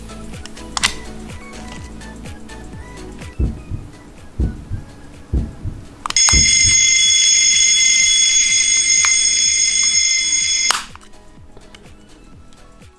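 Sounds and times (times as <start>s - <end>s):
background music: 0.0s - 12.9s
electronic alarm bell ringing: 6.2s - 10.9s.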